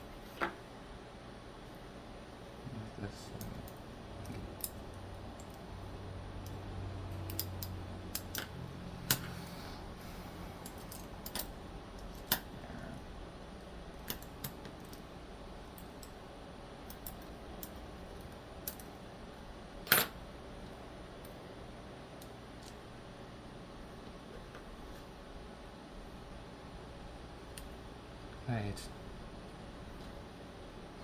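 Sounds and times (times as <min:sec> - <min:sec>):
small metal parts clicking: 0:07.2 - 0:08.5.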